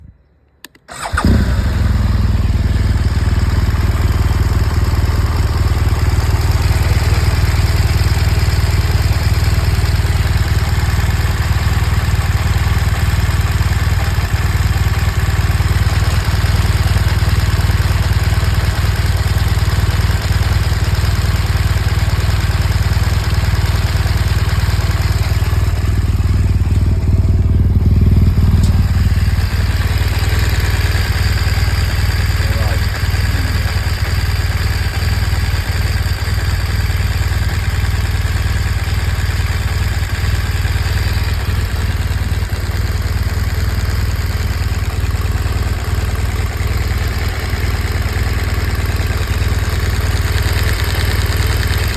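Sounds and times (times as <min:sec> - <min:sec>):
engine ticking: 0:00.7 - 0:51.9
motorcycle engine running: 0:00.9 - 0:51.9.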